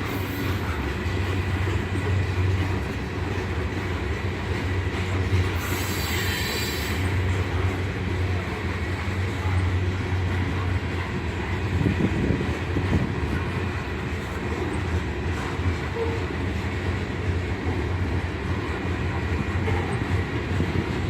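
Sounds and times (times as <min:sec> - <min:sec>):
train wheels rumbling on rails: 0:00.0 - 0:21.0
high wheel squeal: 0:05.6 - 0:07.2.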